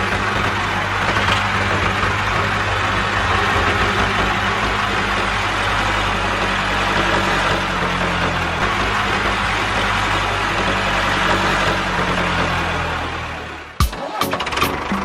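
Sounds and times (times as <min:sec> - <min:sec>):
engine idling: 0:00.0 - 0:15.0.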